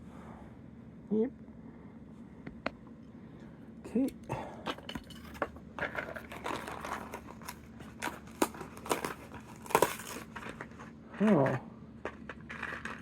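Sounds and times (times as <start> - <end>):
plastic packet crinkling: 6.0 - 10.9.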